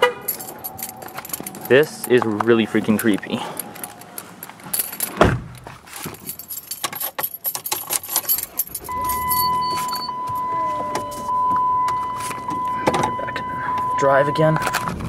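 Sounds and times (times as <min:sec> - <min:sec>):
keys jangling: 0:00.1 - 0:11.2
low hum: 0:00.2 - 0:05.1
electronic warning tone: 0:08.9 - 0:14.9.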